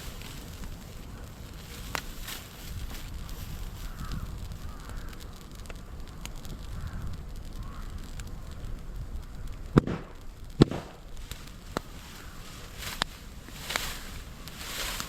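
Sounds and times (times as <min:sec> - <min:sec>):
bamboo crackling pops: 0:00.0 - 0:15.0
fire rumbling: 0:00.0 - 0:15.0
crow cawing: 0:03.8 - 0:05.3, 0:06.6 - 0:08.1, 0:12.0 - 0:12.6.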